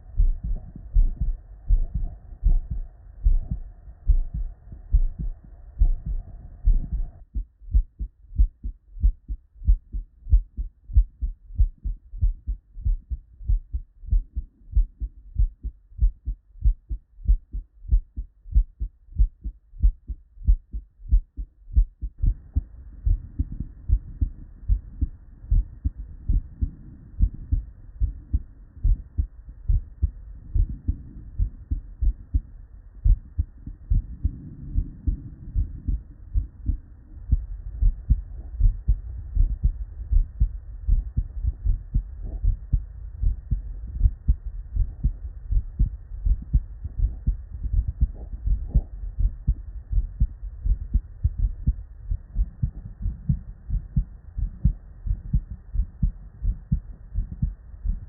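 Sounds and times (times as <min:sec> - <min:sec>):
heartbeat thumps: 0:00.0 - 0:58.0.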